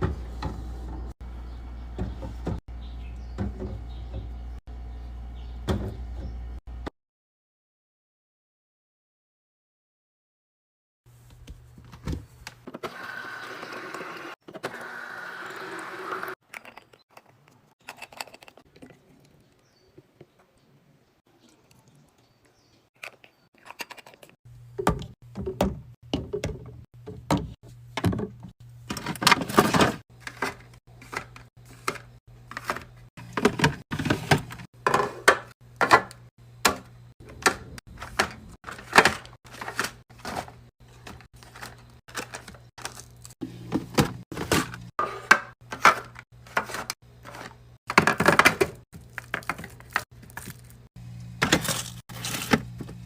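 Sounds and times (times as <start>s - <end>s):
refrigerator hum: 24.5s - 53.0s
packaging rustling: 38.7s - 43.4s, 49.0s - 53.0s
containers tapping and clacking: 43.7s - 50.6s.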